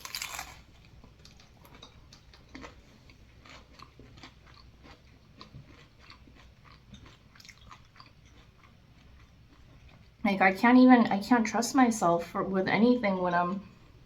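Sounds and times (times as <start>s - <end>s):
person chewing food: 0.0s - 10.2s.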